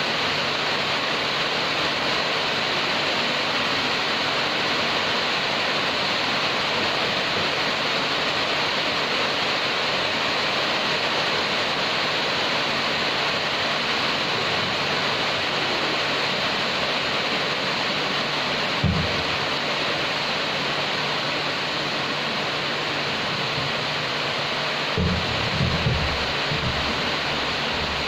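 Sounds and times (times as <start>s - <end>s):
rain pouring: 0.0s - 28.0s
low thump: 18.8s - 19.3s, 25.0s - 27.1s.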